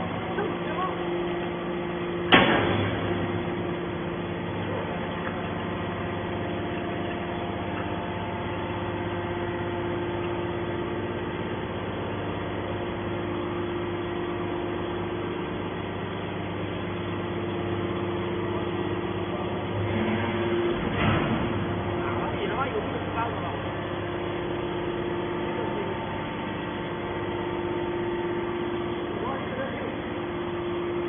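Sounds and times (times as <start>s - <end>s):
hydraulic power unit humming: 0.0s - 31.0s.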